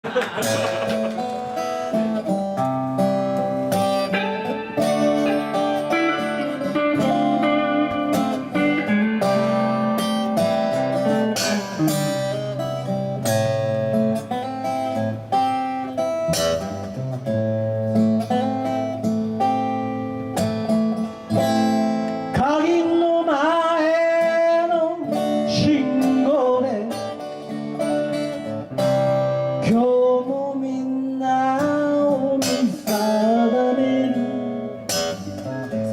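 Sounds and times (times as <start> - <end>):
bending guitar lead line: 0.0 - 22.4, 31.6 - 35.9
acoustic guitar chords: 0.0 - 35.9.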